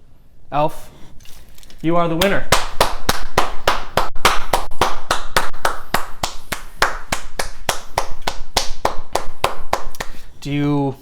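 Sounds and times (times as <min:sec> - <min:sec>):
hands clapping: 0:02.2 - 0:10.3.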